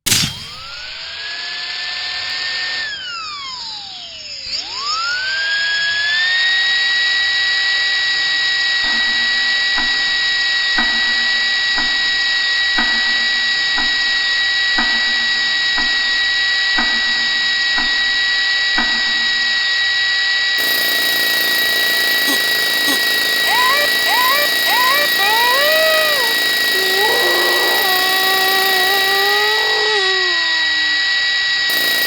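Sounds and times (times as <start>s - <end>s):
dentist's drill whining: 20.6s - 30.0s, 31.7s - 32.0s.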